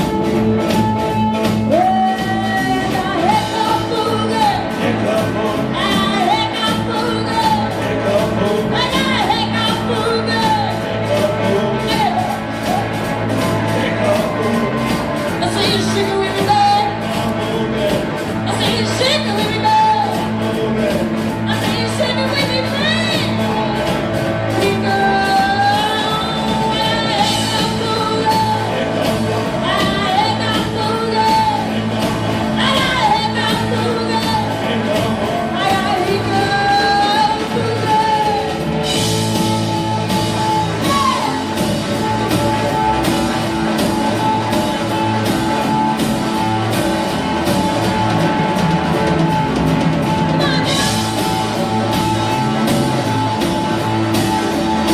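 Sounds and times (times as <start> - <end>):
bending lead guitar line: 0.0 - 54.9
blues-rock band playing: 0.0 - 54.9.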